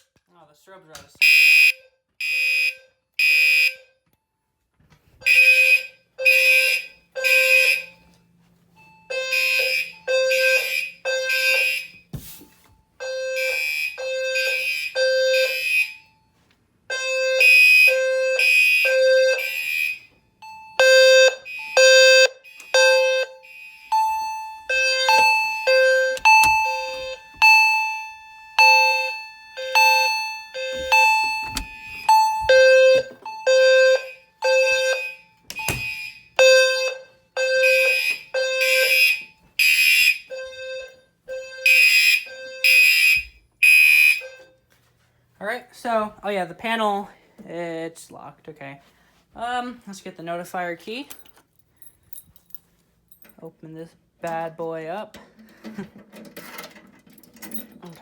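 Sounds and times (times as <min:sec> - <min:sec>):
fire alarm blasts: 0:01.2 - 0:04.0, 0:05.2 - 0:12.2, 0:12.9 - 0:44.6
low-frequency alarm sounder: 0:01.2 - 0:04.0, 0:05.2 - 0:12.2, 0:12.9 - 0:16.3, 0:16.9 - 0:44.6
higher alarm tone: 0:16.9 - 0:44.5.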